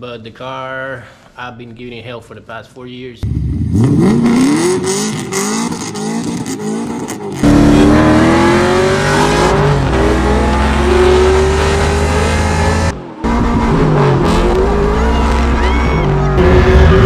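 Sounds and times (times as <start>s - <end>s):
car engine revving hard: 3.6s - 17.0s.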